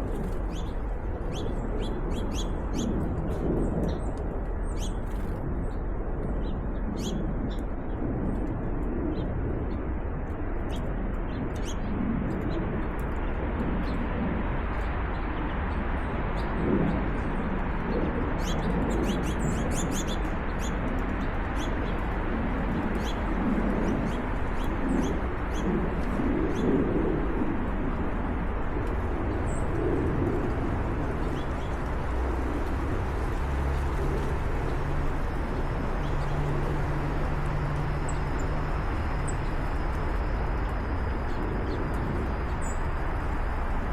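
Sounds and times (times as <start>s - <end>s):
outdoor rushing background: 20.8s - 43.9s
birds chirping: 28.9s - 43.6s.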